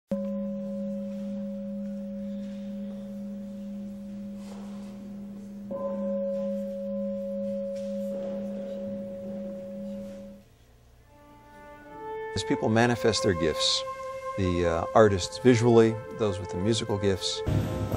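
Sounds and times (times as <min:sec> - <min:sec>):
struck metal instrument ringing: 0:00.1 - 0:10.4.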